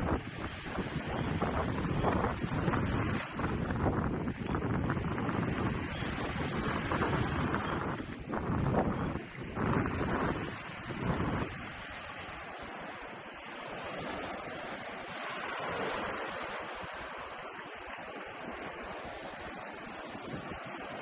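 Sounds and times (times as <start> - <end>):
waves washing onto beach: 0.0 - 21.0
wind buffeting microphone: 0.0 - 21.0.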